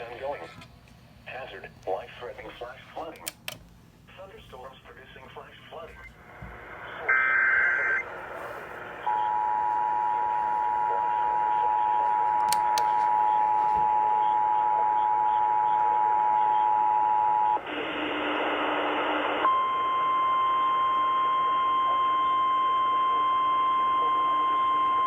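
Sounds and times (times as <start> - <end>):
faint broadcast hiss: 0.0 - 9.1.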